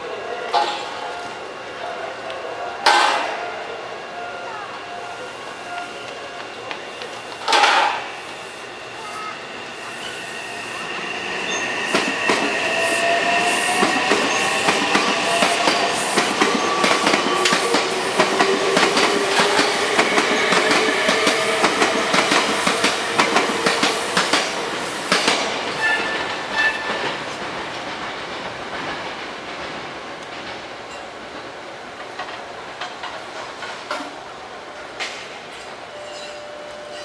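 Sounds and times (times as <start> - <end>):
train wheels clacking: 11.4 - 31.4.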